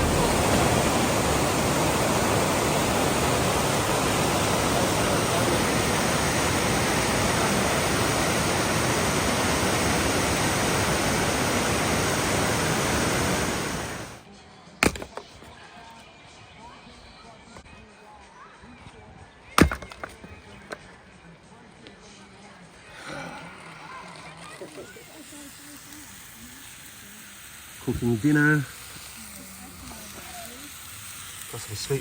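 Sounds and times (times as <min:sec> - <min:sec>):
steady rushing noise: 0:00.0 - 0:14.2.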